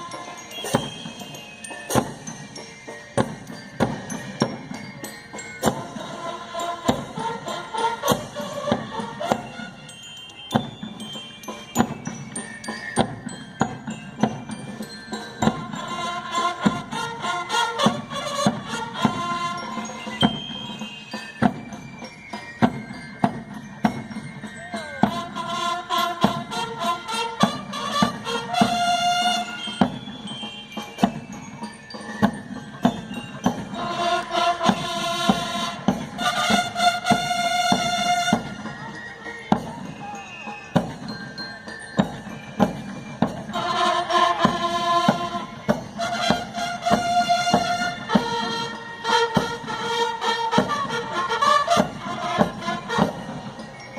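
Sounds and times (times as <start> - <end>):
drum strokes: 0.0 - 53.9
marching band playing: 0.0 - 53.9.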